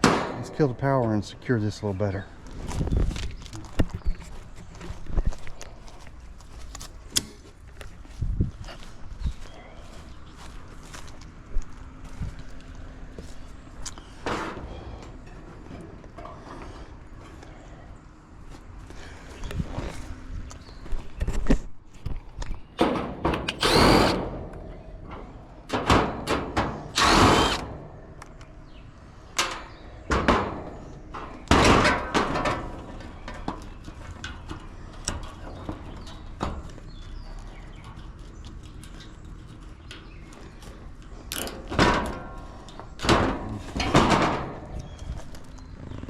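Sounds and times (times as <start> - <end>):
tool clanks and knocks on metal: 0.0 - 0.9, 24.4 - 27.9, 29.4 - 36.7, 41.3 - 45.0.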